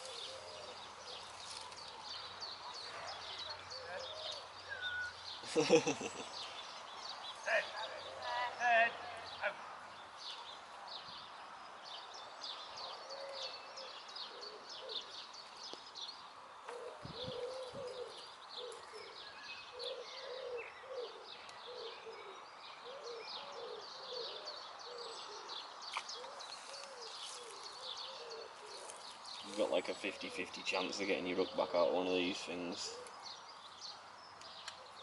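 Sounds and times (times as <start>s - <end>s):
pigeon cooing: 0.0s - 1.2s, 16.7s - 25.6s, 26.2s - 29.0s, 32.8s - 33.2s
small birds twittering: 0.0s - 35.0s.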